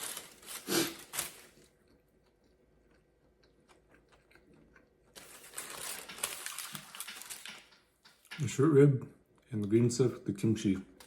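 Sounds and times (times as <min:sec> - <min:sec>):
faint chewing: 0:00.1 - 0:08.4
rustling: 0:05.2 - 0:07.7.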